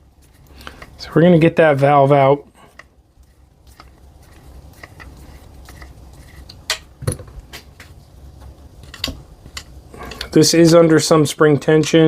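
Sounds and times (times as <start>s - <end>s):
metal parts clicking and knocking: 3.7s - 7.9s, 8.8s - 10.4s.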